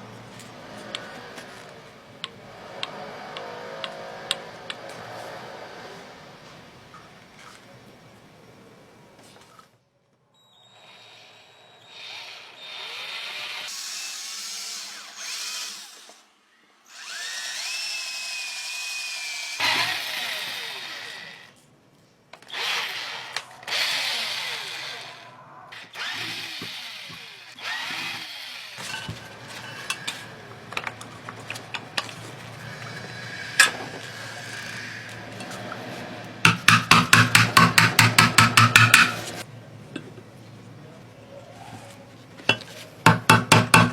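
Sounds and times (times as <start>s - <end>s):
small electric motor whirring: 10.8s - 21.6s, 22.4s - 28.9s, 32.4s - 35.9s.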